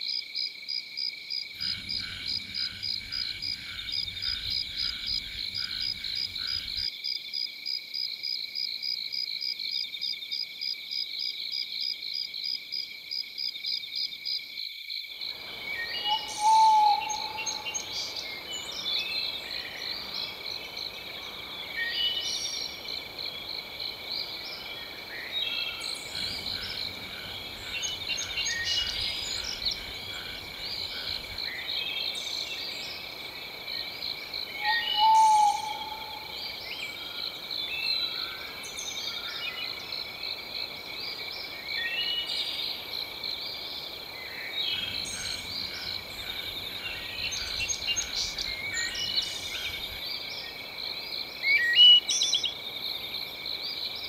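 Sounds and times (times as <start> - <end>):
high insect drone: 1.0 - 6.9, 14.3 - 54.0
frogs calling in chorus: 15.3 - 40.4, 43.4 - 53.5
bird chirps and calls: 15.8 - 19.4, 34.6 - 36.8.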